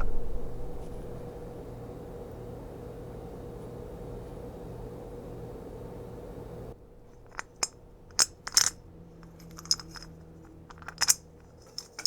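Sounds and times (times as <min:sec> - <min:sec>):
small metal parts clinking: 0:07.2 - 0:12.0.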